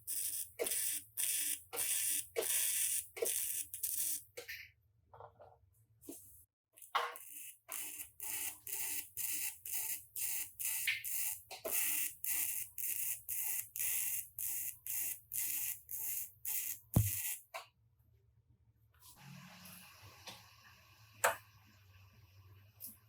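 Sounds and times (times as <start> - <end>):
sharp knock: 17.0 - 17.2.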